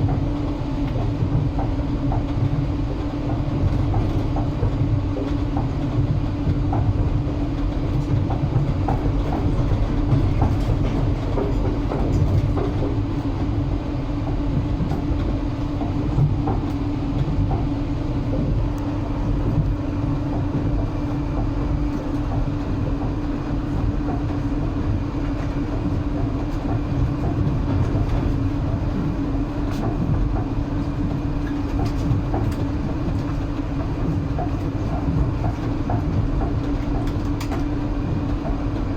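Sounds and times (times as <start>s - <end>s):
constant hum: 0.0s - 38.9s
train wheels rumbling on rails: 0.0s - 38.9s.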